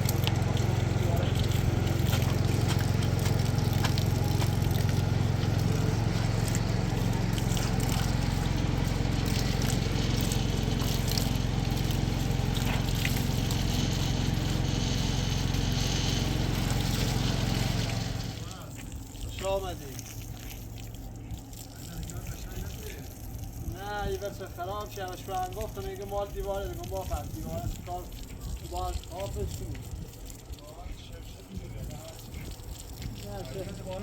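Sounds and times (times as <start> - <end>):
machine motor humming: 0.0 - 18.8
water sloshing and trickling: 0.0 - 34.0.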